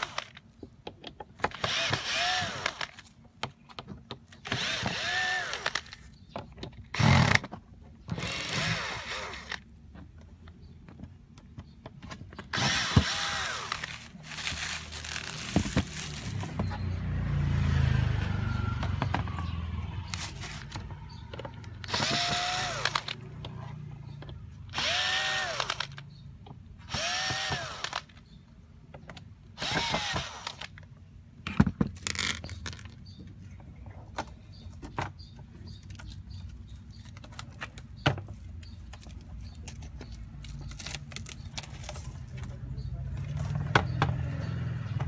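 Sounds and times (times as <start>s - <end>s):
power drill whining: 0.0s - 0.4s, 1.5s - 3.0s, 4.4s - 6.0s, 7.0s - 7.5s, 8.1s - 9.6s, 12.5s - 16.9s, 18.7s - 23.2s, 24.7s - 26.0s, 26.9s - 28.2s, 29.6s - 30.7s.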